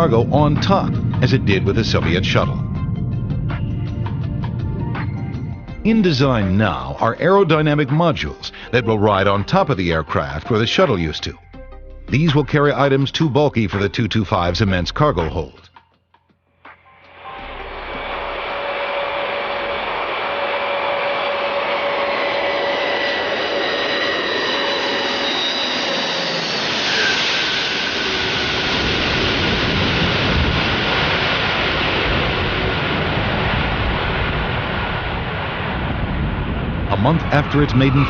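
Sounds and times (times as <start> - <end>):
jet engines roaring and whining: 0.0 - 8.3, 17.4 - 38.0
aircraft passing deep rumble: 0.0 - 8.9, 17.1 - 38.0.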